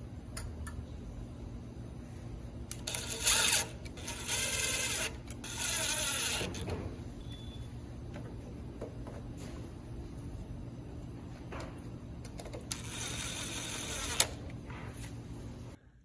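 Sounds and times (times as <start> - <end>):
power driver whirring: 2.7 - 7.6, 12.3 - 14.4.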